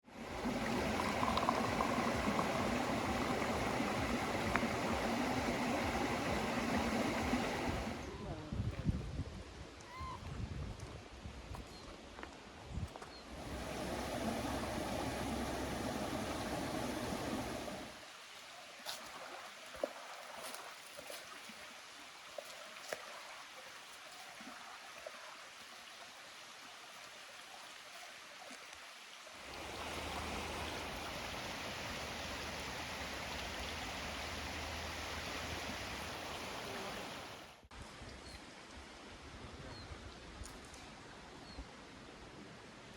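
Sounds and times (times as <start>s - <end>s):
river water rushing: 0.0s - 8.2s, 13.3s - 22.1s, 29.3s - 37.6s.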